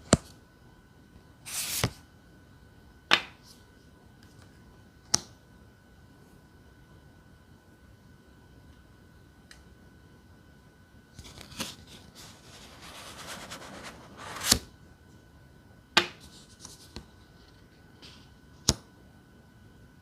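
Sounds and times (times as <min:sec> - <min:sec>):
cards rustling: 0:11.2 - 0:14.6.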